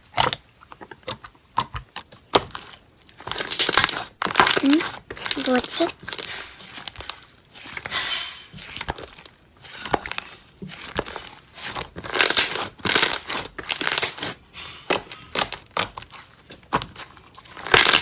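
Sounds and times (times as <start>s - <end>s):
slime crackling and popping: 0.0s - 18.0s.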